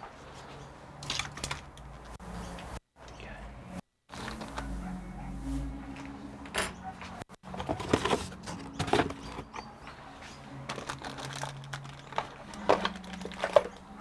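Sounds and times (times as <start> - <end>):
packaging rustling: 7.4 - 14.0.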